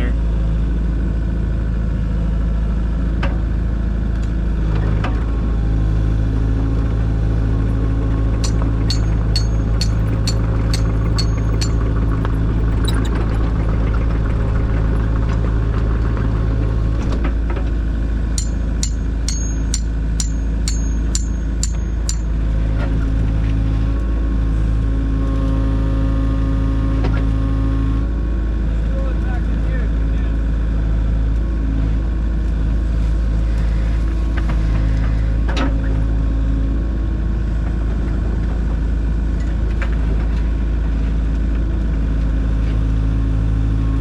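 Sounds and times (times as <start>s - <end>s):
excavator diesel engine running: 4.6s - 23.8s.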